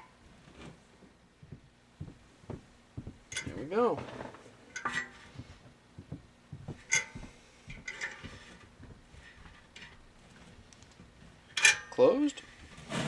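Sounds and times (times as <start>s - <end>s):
metallic clicks of a valve: 3.3s - 3.6s, 6.9s - 7.2s.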